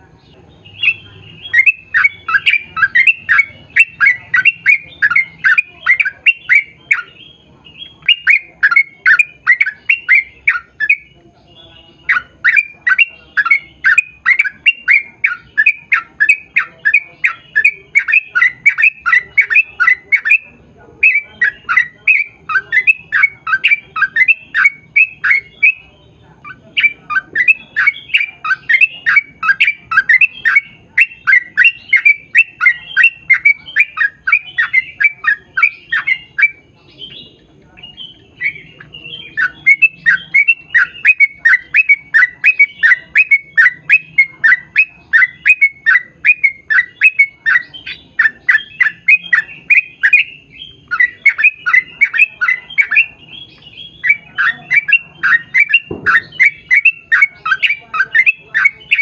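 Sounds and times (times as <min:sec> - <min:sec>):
bird chirping song: 0:00.0 - 0:59.0
short low thump: 0:55.9 - 0:56.4.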